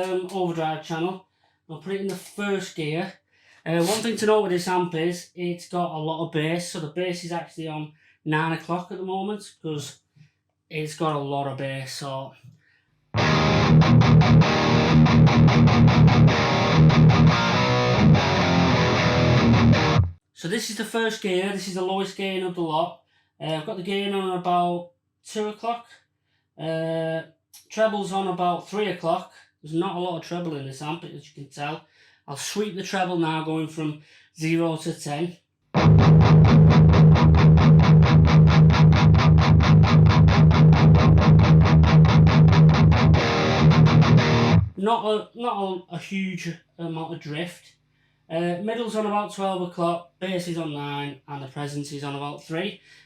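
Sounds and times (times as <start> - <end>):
distorted electric guitar riff: 13.2 - 20.2, 35.8 - 44.8.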